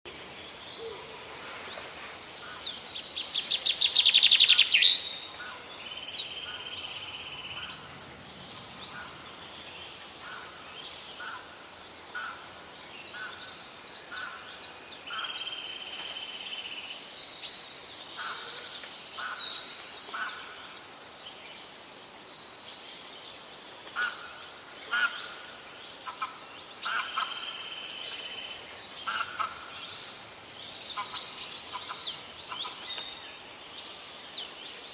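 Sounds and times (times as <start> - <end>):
bird chorus: 0.1 - 34.9.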